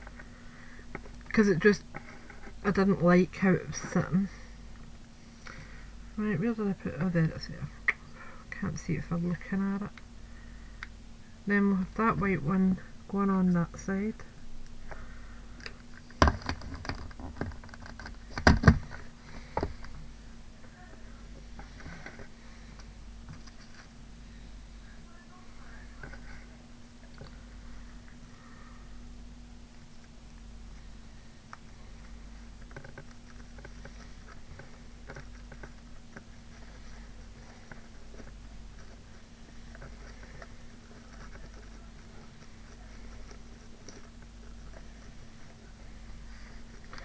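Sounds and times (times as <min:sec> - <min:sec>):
faint steady hum: 0:00.0 - 0:47.0
paper crafts clicking and tapping: 0:15.6 - 0:20.0.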